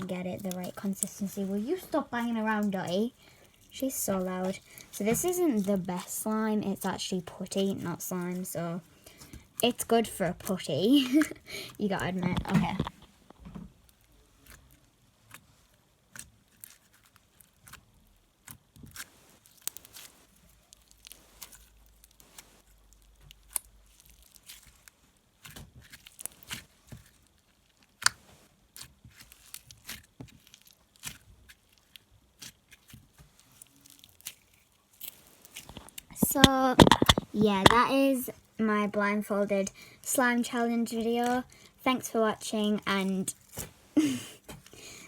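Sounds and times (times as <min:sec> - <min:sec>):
putty popping and crackling: 0:00.0 - 0:13.6, 0:17.6 - 0:38.3.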